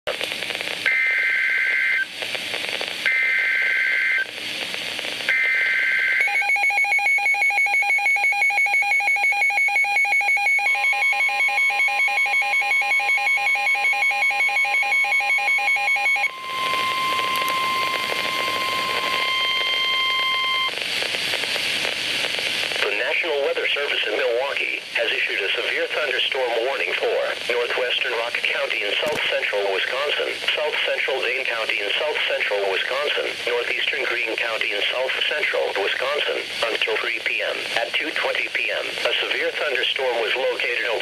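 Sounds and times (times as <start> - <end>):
radio static: 0.1 - 6.3, 16.2 - 41.0
digital data tone bursts: 5.3 - 20.7
pulsing electronic alarm beeps: 5.3 - 20.7
steady single-pitch warning tone: 5.3 - 20.7.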